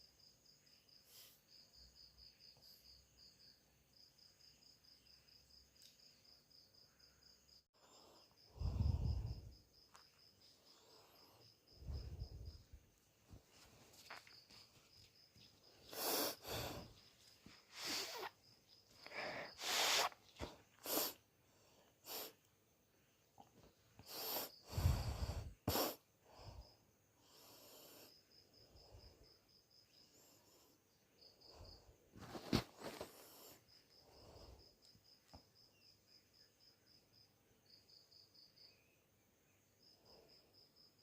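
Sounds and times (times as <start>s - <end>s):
crickets chirping: 0.0s - 41.0s.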